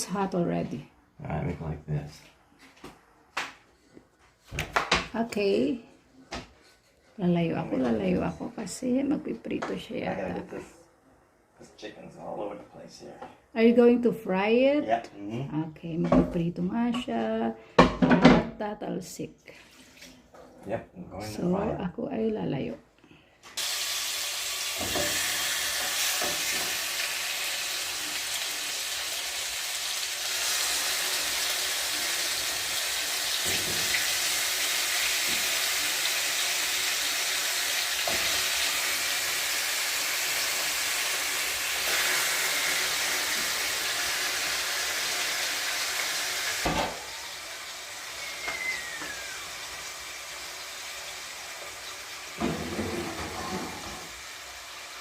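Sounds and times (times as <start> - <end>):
chicken sizzling in frying pan: 23.6 - 55.0.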